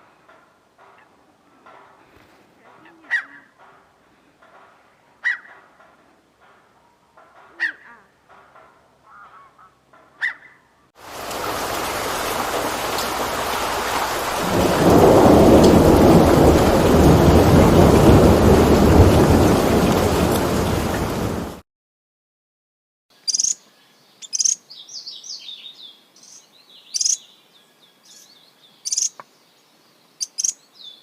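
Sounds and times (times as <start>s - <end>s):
bird honking calls: 5.2s - 5.8s, 7.4s - 8.3s, 9.0s - 10.7s.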